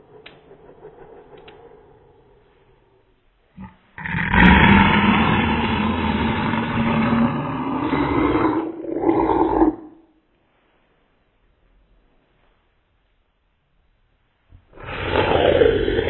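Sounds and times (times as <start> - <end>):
slow motion person screaming: 0.0 - 8.8.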